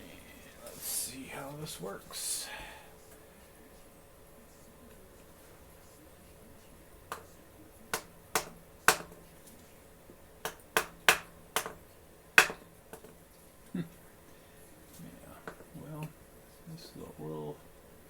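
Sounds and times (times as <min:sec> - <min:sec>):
hammer tapping metal tool: 0:07.9 - 0:09.2, 0:10.4 - 0:11.8, 0:12.4 - 0:13.2.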